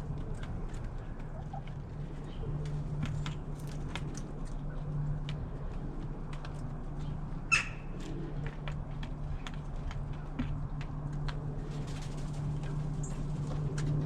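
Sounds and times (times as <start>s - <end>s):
hens pecking taps: 0.0s - 14.0s
steady low hum: 0.0s - 14.0s.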